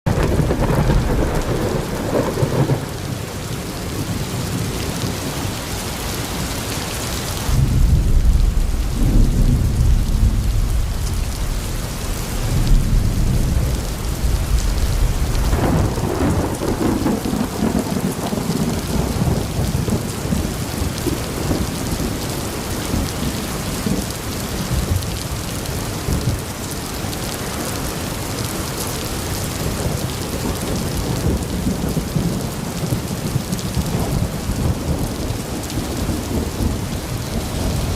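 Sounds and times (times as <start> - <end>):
heavy rain falling: 0.0 - 37.9
deep low rumbling: 7.5 - 16.4.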